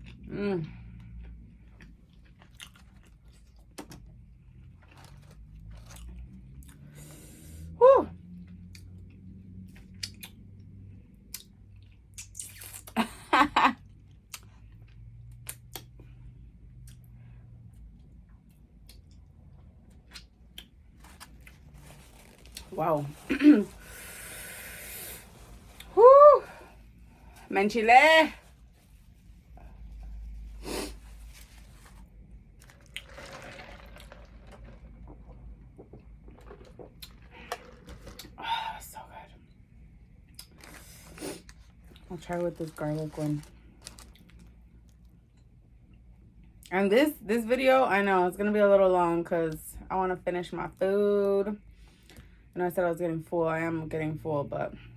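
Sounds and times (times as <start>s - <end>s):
wet chewing mouth sounds: 1.0s - 3.9s
close chewing with mouth smacks: 1.0s - 5.1s, 8.7s - 10.6s, 40.2s - 42.0s.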